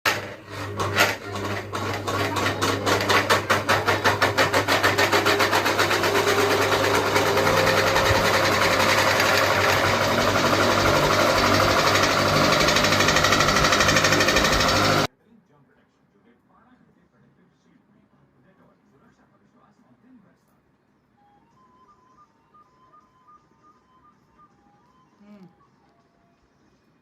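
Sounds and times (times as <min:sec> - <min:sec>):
ceiling fan clacking: 0:00.0 - 0:15.1
low motor hum: 0:00.1 - 0:15.1.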